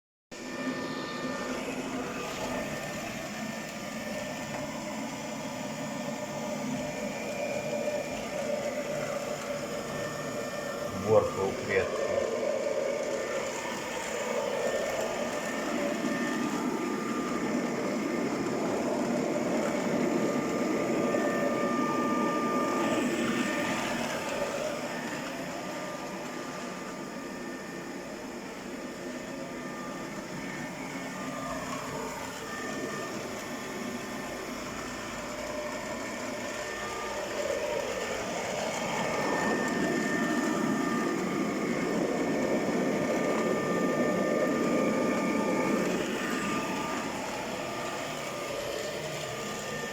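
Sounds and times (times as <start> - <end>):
robot vacuum whirring hum: 0.4 - 49.9.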